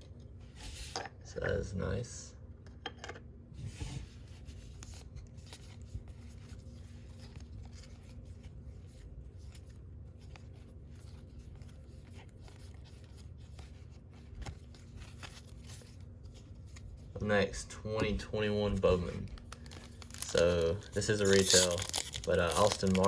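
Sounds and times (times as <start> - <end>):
steady low hum: 0.0 - 23.0
trading cards rubbing and clicking: 18.6 - 23.0.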